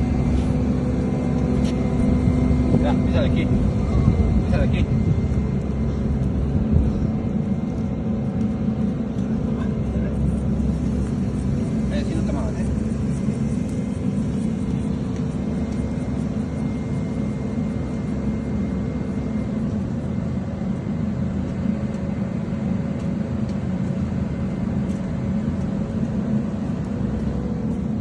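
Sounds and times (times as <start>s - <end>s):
faint steady whine: 0.0s - 28.0s
low machinery rumble: 0.0s - 28.0s.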